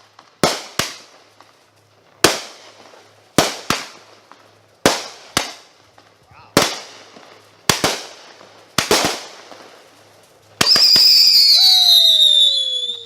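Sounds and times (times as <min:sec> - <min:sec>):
aerial fireworks bangs: 0:06.4 - 0:09.7.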